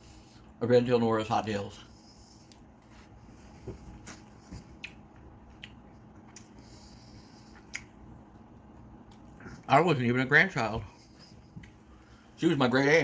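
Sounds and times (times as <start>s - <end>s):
soft chewing: 1.4s - 9.8s.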